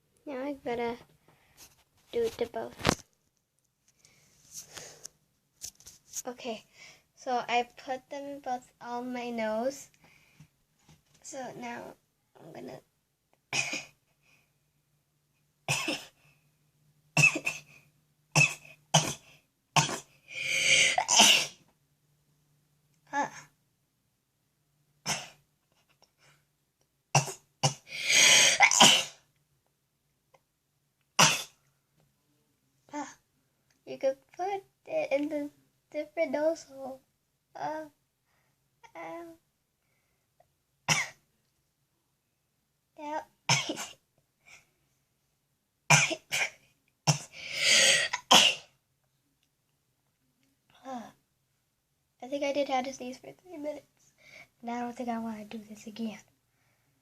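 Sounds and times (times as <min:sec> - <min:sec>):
girl coughing: 0:13.5 - 0:14.0, 0:15.7 - 0:16.2, 0:17.2 - 0:17.8, 0:18.4 - 0:21.6, 0:25.1 - 0:25.4, 0:27.2 - 0:29.2, 0:31.2 - 0:31.6, 0:40.9 - 0:41.2, 0:43.5 - 0:44.0, 0:45.9 - 0:48.7
girl sneezing: 0:13.5 - 0:14.0, 0:17.2 - 0:17.8, 0:18.4 - 0:21.6, 0:25.0 - 0:25.4, 0:27.2 - 0:29.3, 0:43.5 - 0:44.0, 0:45.9 - 0:48.7.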